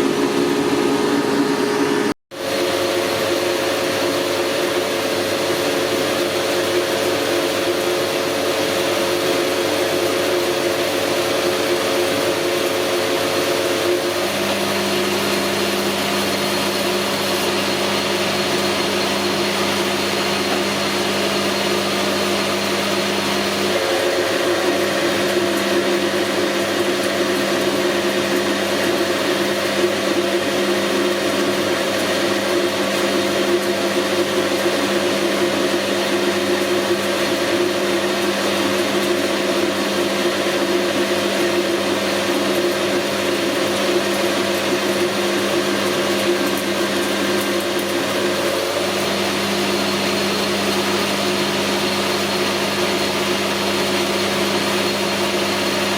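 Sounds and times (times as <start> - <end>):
high steady tone: 0.0 - 2.2
machine tool motor hum: 0.0 - 2.2, 14.3 - 31.1.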